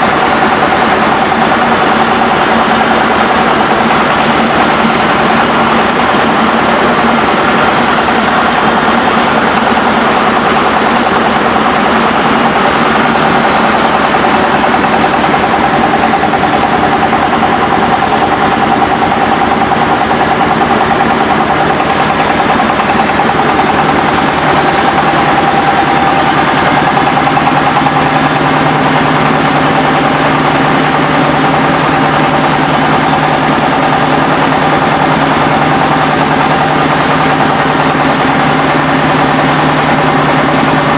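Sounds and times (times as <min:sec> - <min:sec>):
rice milling machine humming: 0:00.0 - 0:40.9.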